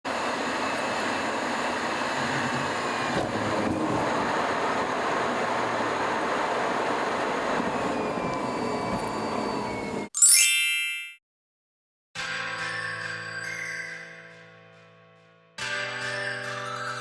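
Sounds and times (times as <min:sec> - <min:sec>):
moving vehicle rumbling: 0:00.1 - 0:10.1.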